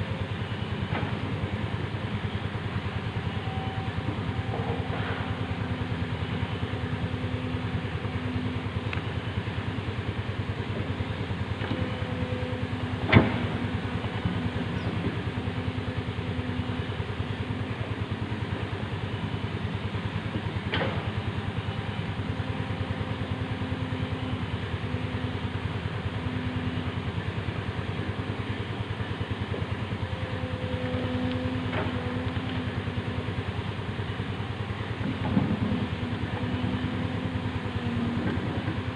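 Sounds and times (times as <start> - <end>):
excavator diesel engine running: 0.0 - 38.9
humming tone: 3.3 - 6.6.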